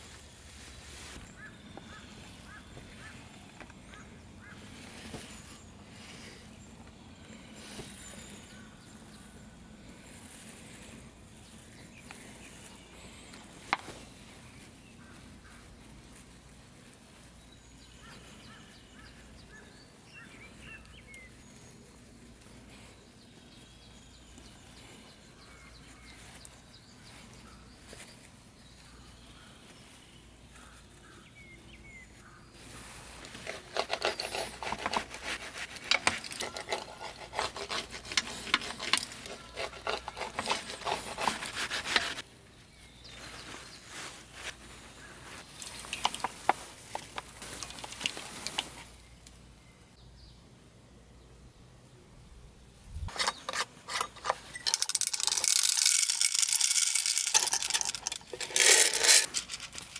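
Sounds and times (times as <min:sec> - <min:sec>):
wild birds chirping: 0:00.0 - 0:59.9
faint background hiss: 0:41.3 - 0:59.9.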